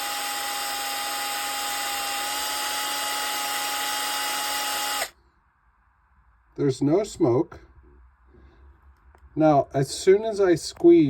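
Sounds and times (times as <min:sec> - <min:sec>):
cordless drill whining: 0:00.0 - 0:05.2.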